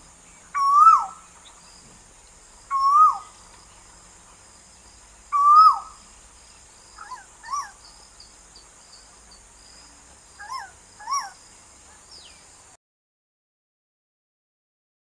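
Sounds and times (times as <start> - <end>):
steady high hiss: 0.0 - 12.8
koel bird calling: 0.4 - 1.6, 2.7 - 3.5, 5.3 - 6.1, 7.0 - 7.9, 10.4 - 11.4.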